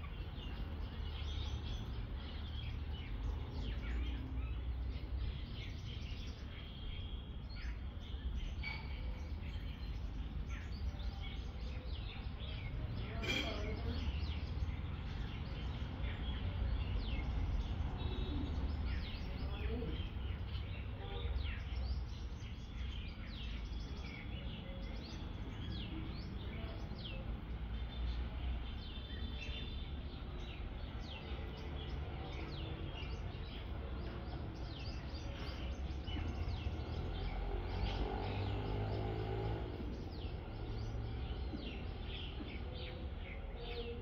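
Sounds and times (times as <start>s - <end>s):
small birds chirping: 0.0s - 44.0s.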